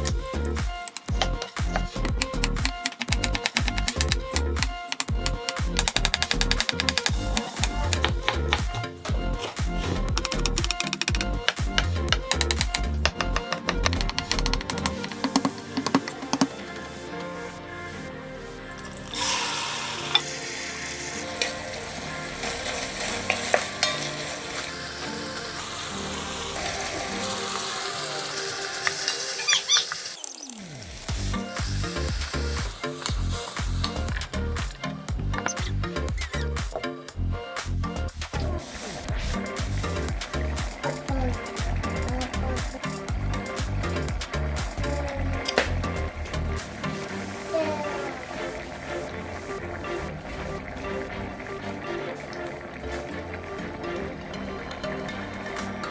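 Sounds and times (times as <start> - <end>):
electronic music with steady beat: 0.0 - 55.9
food sizzling in a pan: 18.9 - 34.2.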